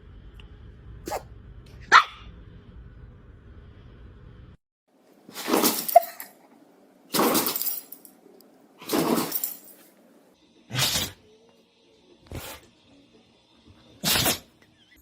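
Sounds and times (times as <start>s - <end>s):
dog sneezing: 1.1s - 1.3s, 8.8s - 9.6s, 10.7s - 11.2s, 14.0s - 14.5s.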